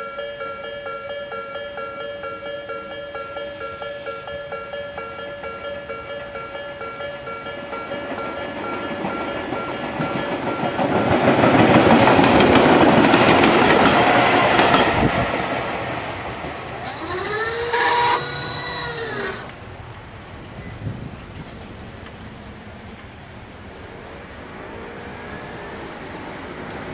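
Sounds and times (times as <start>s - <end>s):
level crossing bell ringing: 0.0s - 10.7s
electric train passing: 0.0s - 26.9s
gliding pitched tone: 16.8s - 19.5s.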